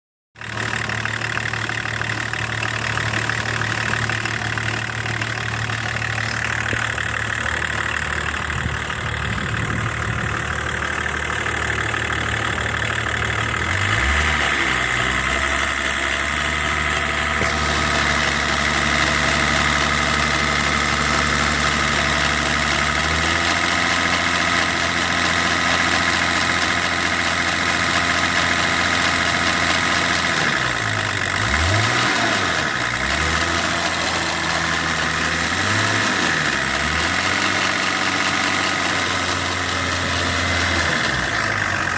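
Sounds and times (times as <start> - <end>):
diesel engine idling: 0.4 - 41.9.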